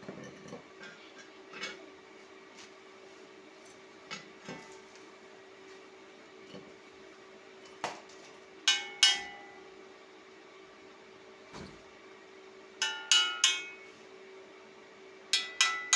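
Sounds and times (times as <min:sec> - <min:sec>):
hammer striking steel: 0:08.7 - 0:09.6, 0:12.8 - 0:13.9, 0:15.4 - 0:15.9.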